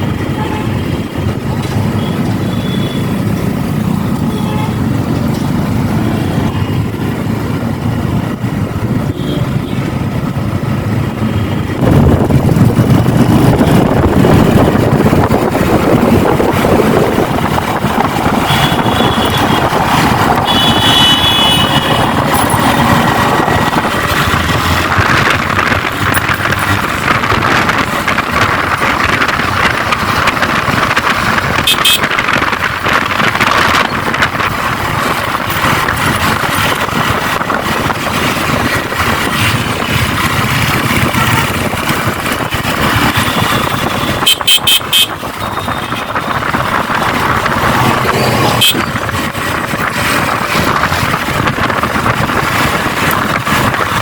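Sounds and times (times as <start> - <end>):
road and wind noise: 0.0 - 54.0
car horns tooting: 0.2 - 1.0, 1.8 - 5.1, 18.2 - 24.8, 31.5 - 32.3, 39.3 - 47.4, 48.1 - 49.2.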